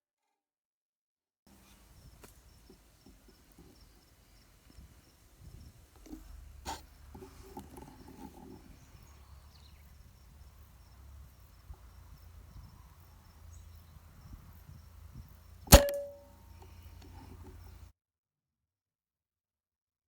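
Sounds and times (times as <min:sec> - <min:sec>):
air rifle shot: 0:15.7 - 0:16.3.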